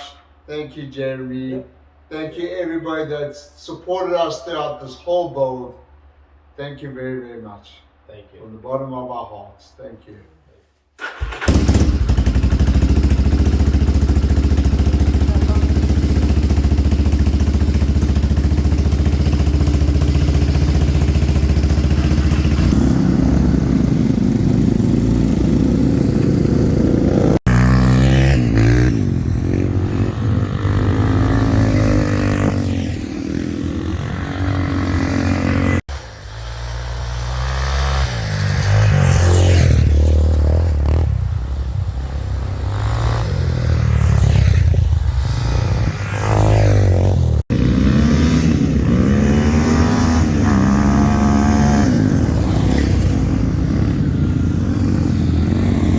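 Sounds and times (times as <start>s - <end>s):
atv engine revving: 11.0s - 55.9s.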